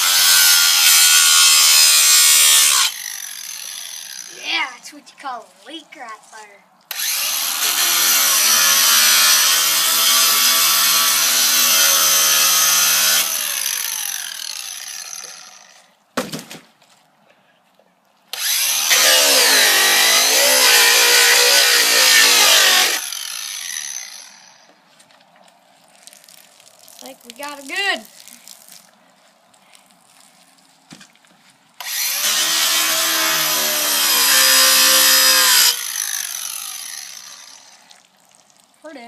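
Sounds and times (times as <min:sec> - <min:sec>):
angle grinder running: 0:00.0 - 0:04.5, 0:06.9 - 0:15.8, 0:18.4 - 0:24.6, 0:31.8 - 0:37.8
grinder disc cutting plastic bottle: 0:18.3 - 0:24.5, 0:31.8 - 0:37.8.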